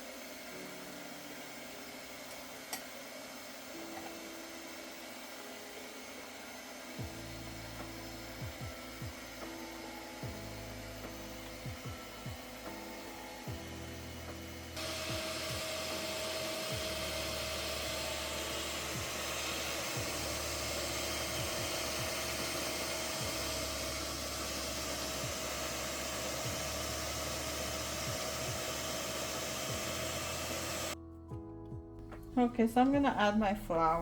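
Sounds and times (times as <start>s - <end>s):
electric mixer whining: 0.0s - 31.0s.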